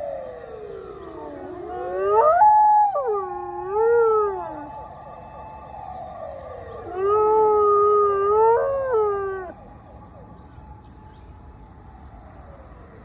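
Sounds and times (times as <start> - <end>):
faint siren wail: 0.0 - 13.0
dog howling: 1.0 - 4.7, 6.7 - 9.6.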